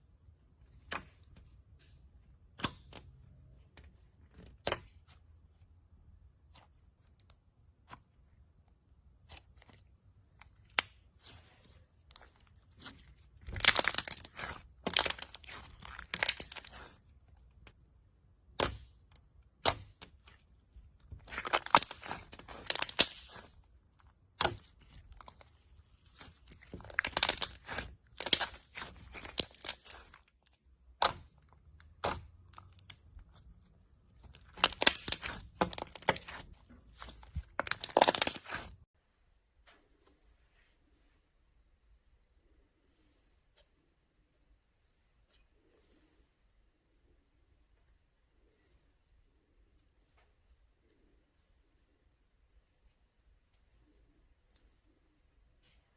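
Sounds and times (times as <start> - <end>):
slime crackling and popping: 9.1 - 38.8.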